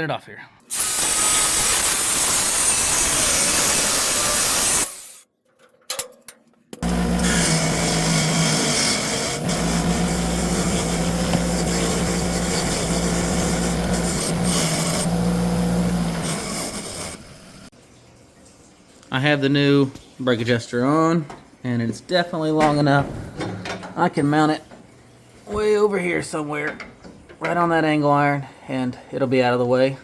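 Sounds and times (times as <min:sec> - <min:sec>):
power grinder grinding metal: 0:00.7 - 0:05.2, 0:06.8 - 0:17.7.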